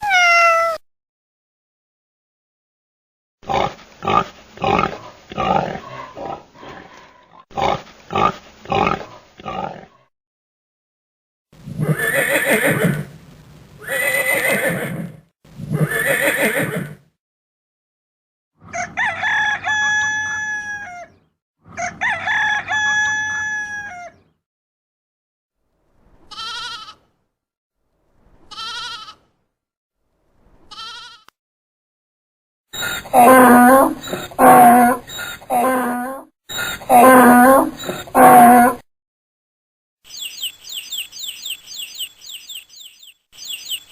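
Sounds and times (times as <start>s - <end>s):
harsh farm animal calls: 3.4s - 10.0s, 18.6s - 24.2s, 26.3s - 27.1s, 28.5s - 29.3s, 30.7s - 31.3s, 32.8s - 38.8s, 40.1s - 43.9s
rooster crowing: 18.7s - 21.2s, 21.8s - 24.2s.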